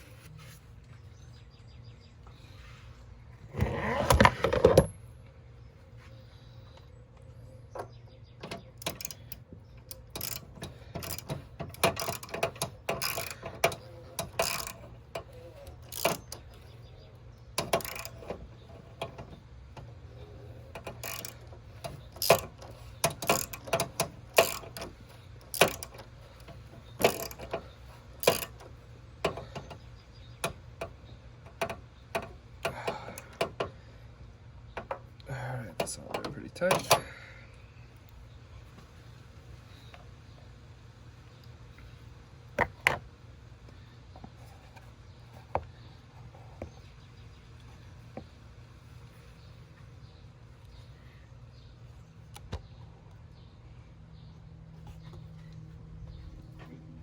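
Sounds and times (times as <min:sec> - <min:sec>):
ratchet wrench clicking: 0:08.5 - 0:16.6, 0:17.6 - 0:19.3, 0:20.7 - 0:29.8.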